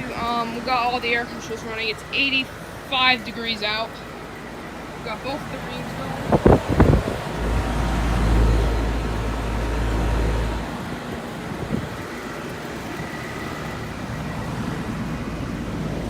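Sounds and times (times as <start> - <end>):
air conditioners whooshing: 0.0 - 16.0
heavy low rumble: 4.8 - 16.0.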